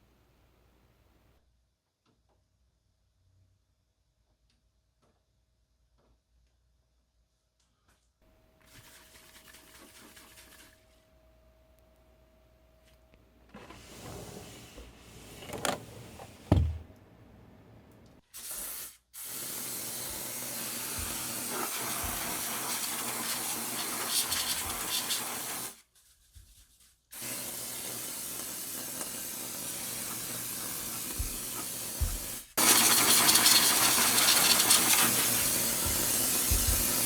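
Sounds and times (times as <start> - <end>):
knocks: 16.5 - 16.9
low thump: 16.5 - 16.9
water spraying hiss: 18.3 - 25.8, 27.2 - 37.0.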